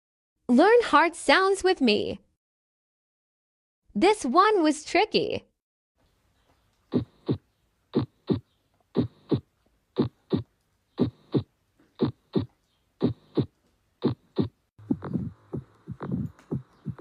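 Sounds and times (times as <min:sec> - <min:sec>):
heartbeat lub-dub: 0:06.9 - 0:07.4, 0:08.0 - 0:17.0.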